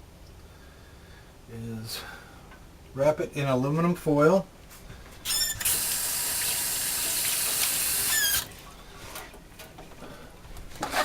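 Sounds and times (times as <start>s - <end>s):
faucet valve squeal: 5.3s - 8.5s
water running into sink: 5.6s - 8.5s.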